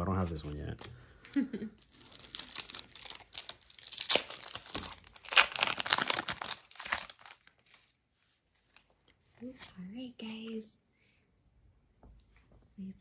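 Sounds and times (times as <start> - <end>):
foil wrapper crinkling and tearing: 1.8 - 8.0.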